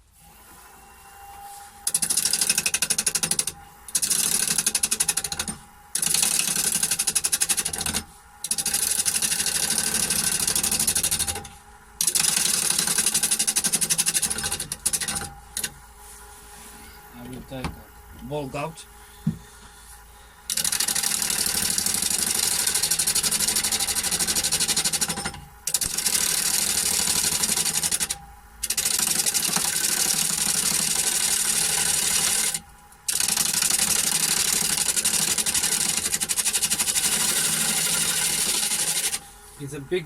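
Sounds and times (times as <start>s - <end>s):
gouge scraping spinning wood: 1.9s - 15.7s, 20.5s - 28.0s, 28.7s - 39.2s.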